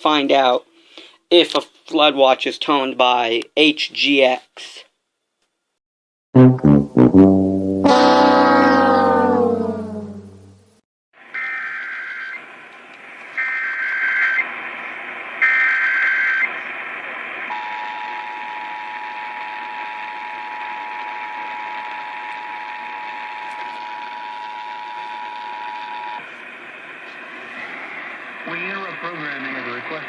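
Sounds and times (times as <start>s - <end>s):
two-tone attention signal: 6.4s - 10.3s
radio background hiss: 12.4s - 24.1s, 24.8s - 30.0s.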